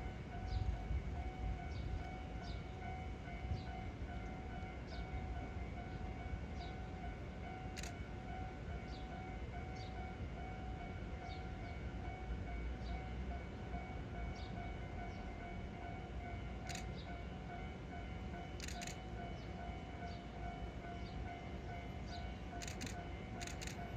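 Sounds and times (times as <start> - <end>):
electric train rumbling past: 0.0 - 23.9
level-crossing warning bell: 0.0 - 23.9.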